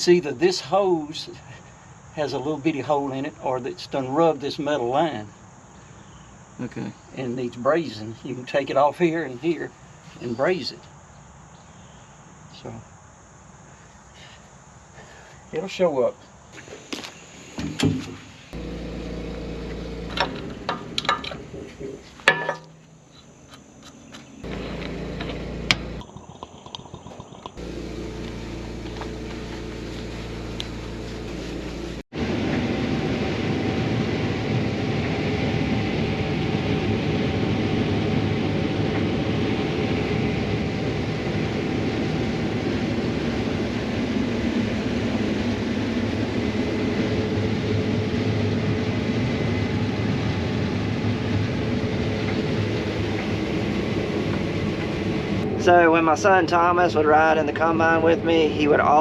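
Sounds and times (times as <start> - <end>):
engine hum: 16.6 - 59.0
combine harvester drone: 18.5 - 23.0, 24.4 - 26.0, 27.6 - 59.0.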